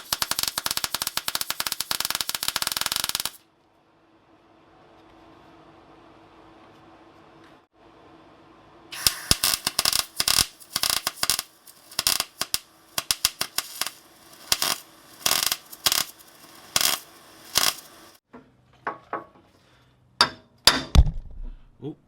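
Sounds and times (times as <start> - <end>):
harsh metallic bursts: 9.0 - 18.2.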